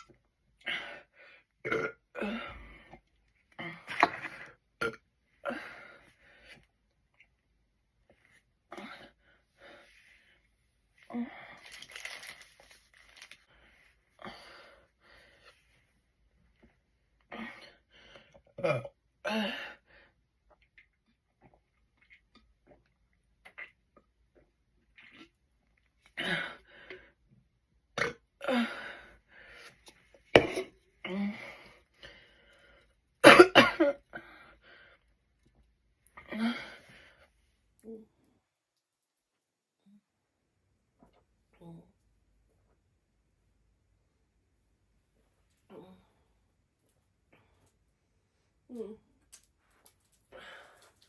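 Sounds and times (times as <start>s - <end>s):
person burping: 1.6s - 2.7s, 3.6s - 5.7s, 18.6s - 19.5s, 28.0s - 28.6s, 30.4s - 31.2s.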